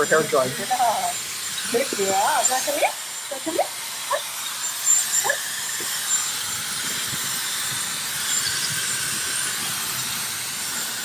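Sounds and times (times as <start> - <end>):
hair dryer blowing: 0.0 - 11.0.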